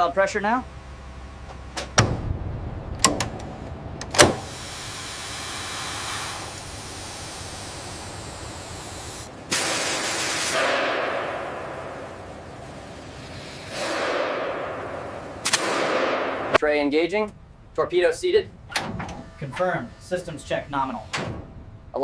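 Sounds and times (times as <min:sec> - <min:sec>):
sharp metallic clicks: 0:03.0 - 0:04.8
pressurised air hissing: 0:03.1 - 0:16.6, 0:19.3 - 0:21.2.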